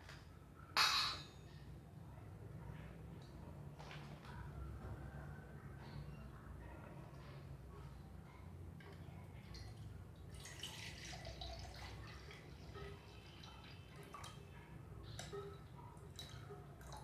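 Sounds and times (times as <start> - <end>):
water dripping and splashing: 8.8 - 14.5, 16.0 - 17.0.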